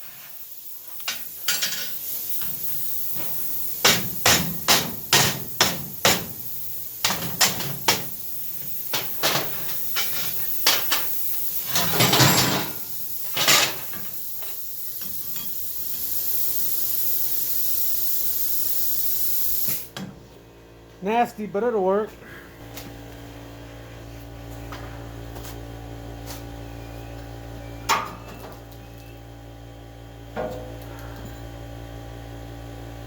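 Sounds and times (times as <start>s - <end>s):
steady hiss: 0.0s - 20.0s.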